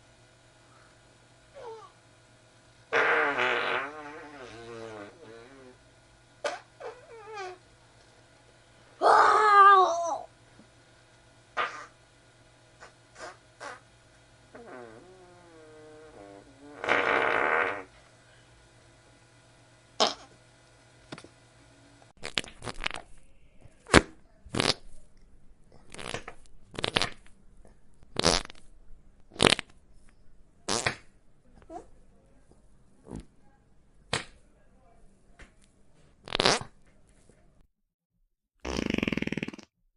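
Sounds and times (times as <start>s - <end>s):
fart sound effects: 2.9s - 5.8s, 6.4s - 7.6s, 11.6s - 12.0s, 12.8s - 13.9s, 14.5s - 18.0s, 20.0s - 20.4s, 22.2s - 23.1s, 23.8s - 24.9s, 25.9s - 27.2s, 28.1s - 28.7s, 29.3s - 29.7s, 30.7s - 31.1s, 36.2s - 36.8s, 38.6s - 39.7s.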